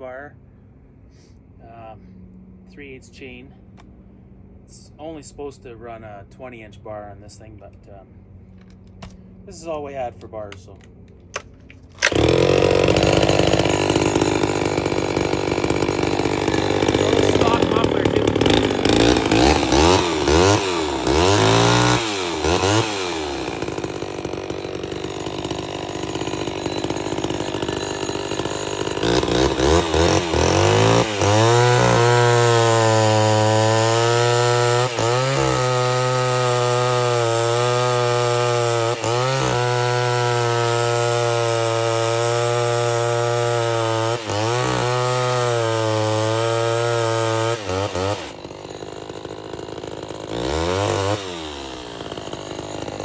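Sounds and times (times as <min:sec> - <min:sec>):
chainsaw revving and cutting: 0:12.0 - 0:53.0.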